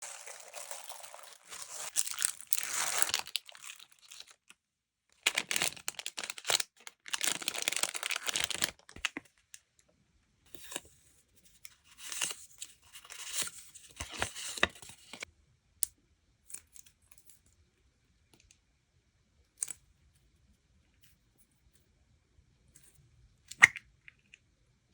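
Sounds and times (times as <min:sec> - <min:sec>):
packaging crinkling and tearing: 0:00.0 - 0:04.5, 0:05.2 - 0:09.3.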